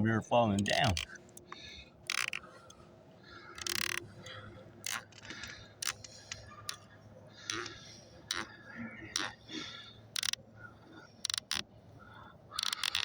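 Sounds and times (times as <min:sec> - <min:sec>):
hand tools clicking and knocking: 0:02.1 - 0:02.4, 0:03.6 - 0:04.0.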